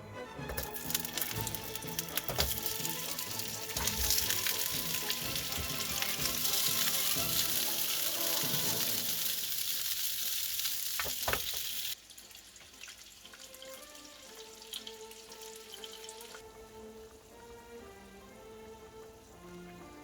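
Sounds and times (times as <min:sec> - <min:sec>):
light background music: 0:00.0 - 0:20.0
faint crackles: 0:00.5 - 0:12.0
food sizzling in a pan: 0:00.5 - 0:20.0.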